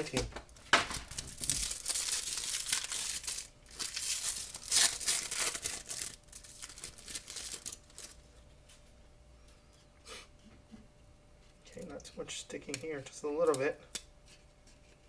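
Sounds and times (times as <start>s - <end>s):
wrapper tearing and crinkling: 0.6s - 8.2s.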